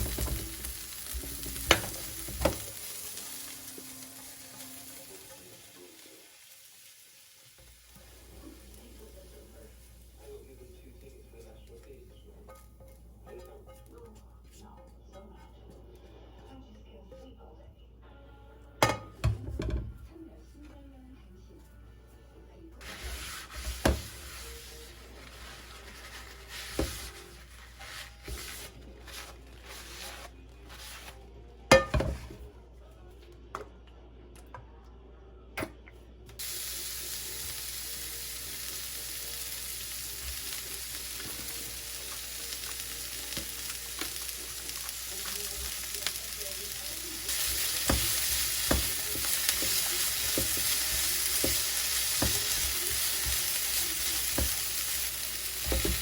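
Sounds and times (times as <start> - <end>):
cooking utensils clinking: 0.0 - 5.9, 31.7 - 32.3
food sizzling in a frying pan: 0.0 - 12.1, 22.8 - 31.1, 36.4 - 56.0
spatula tapping and scraping: 22.8 - 31.1, 47.3 - 54.7, 55.6 - 56.0.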